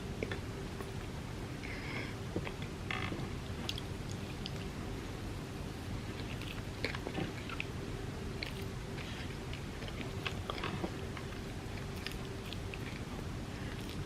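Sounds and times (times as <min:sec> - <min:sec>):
steady low hum: 0:00.0 - 0:14.0
chewing crunchy cookies: 0:06.0 - 0:14.0.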